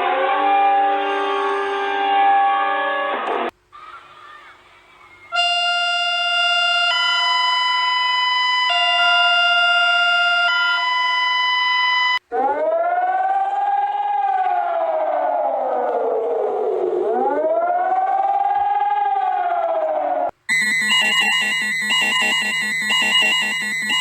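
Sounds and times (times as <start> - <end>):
siren wail: 0.0 - 2.2, 5.4 - 24.0
two-tone electronic alert chord: 20.5 - 24.0.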